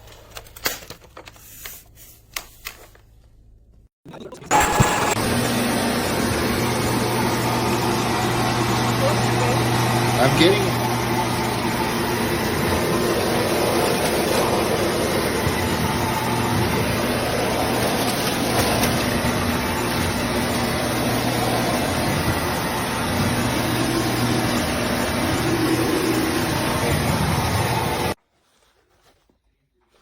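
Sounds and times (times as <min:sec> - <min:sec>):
stick vacuum running: 0:04.4 - 0:28.2.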